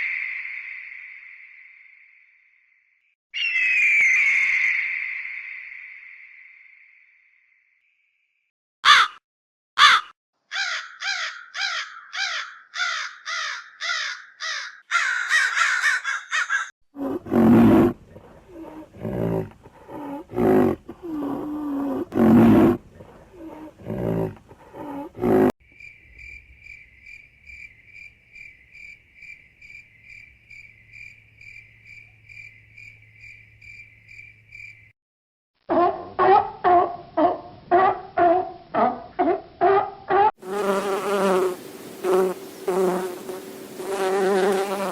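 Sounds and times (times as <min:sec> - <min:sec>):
harsh high animal calls: 0:03.4 - 0:05.0, 0:08.8 - 0:09.2, 0:09.8 - 0:17.9
deep roaring animal calls: 0:17.0 - 0:25.5.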